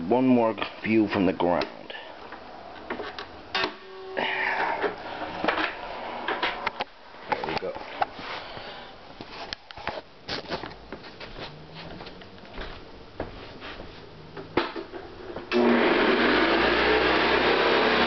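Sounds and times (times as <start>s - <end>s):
vacuum cleaner motor running: 15.5s - 18.0s.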